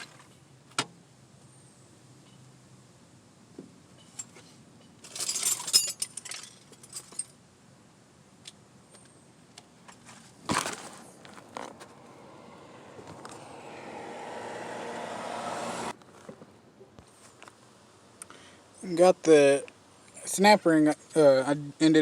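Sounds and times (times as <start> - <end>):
metal tools clinking and scraping: 4.0 - 7.4.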